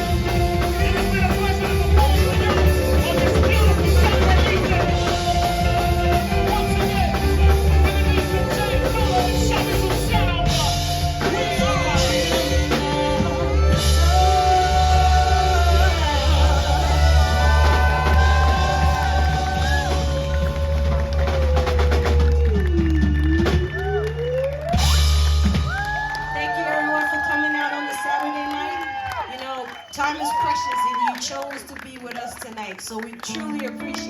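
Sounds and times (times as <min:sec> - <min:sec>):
person singing: 0:00.0 - 0:24.4, 0:33.2 - 0:34.0
melodic lines bending in pitch: 0:00.0 - 0:25.9
drum kit: 0:00.0 - 0:26.6
heavy bass: 0:00.0 - 0:26.7.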